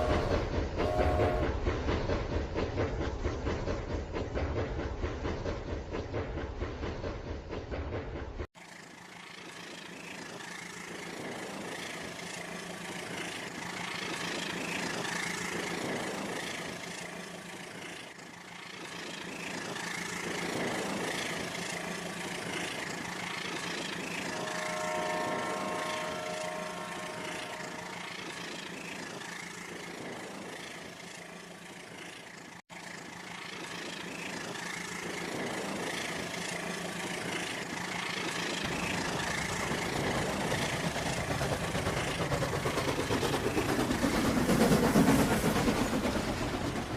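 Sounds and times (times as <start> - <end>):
horn-like tone: 0.0 - 1.6, 24.3 - 28.2.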